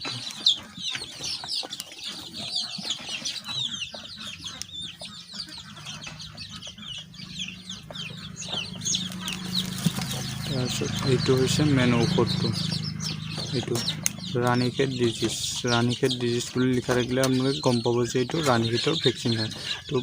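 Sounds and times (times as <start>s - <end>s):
chicks peeping: 0.0s - 20.0s.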